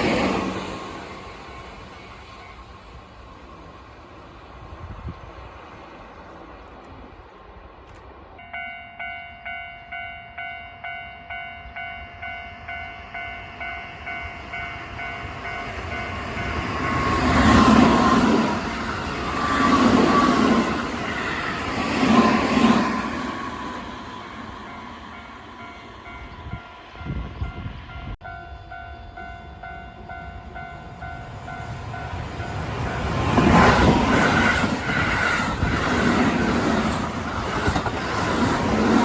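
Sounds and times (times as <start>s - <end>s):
electric train passing: 0.0s - 39.0s
level crossing warning bell: 8.4s - 17.9s, 24.6s - 33.2s.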